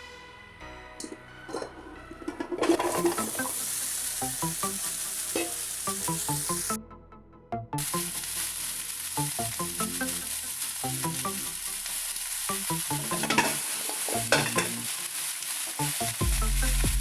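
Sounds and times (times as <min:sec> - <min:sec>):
plucked background music: 0:00.0 - 0:17.0
cooking hiss: 0:02.6 - 0:06.8, 0:07.8 - 0:17.0
stirring and clatter: 0:12.9 - 0:16.0.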